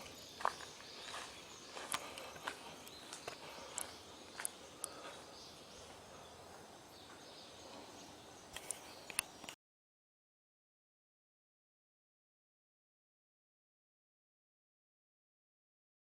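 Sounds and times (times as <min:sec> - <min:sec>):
soft clicks: 0:08.5 - 0:09.6.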